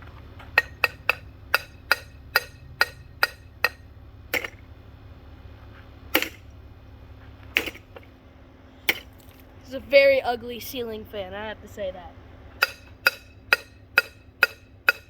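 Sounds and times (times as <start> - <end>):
ceiling fan being struck: 0.0 - 4.6, 12.6 - 15.0.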